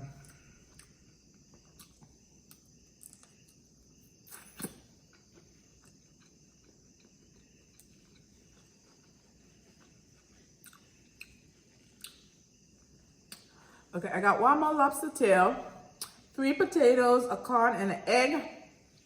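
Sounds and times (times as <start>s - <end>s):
high insect chirring: 0.0s - 19.0s
mouth clicks from chewing: 1.6s - 3.6s, 4.3s - 8.3s, 10.6s - 11.4s, 12.0s - 12.3s, 13.3s - 13.5s, 16.0s - 16.2s.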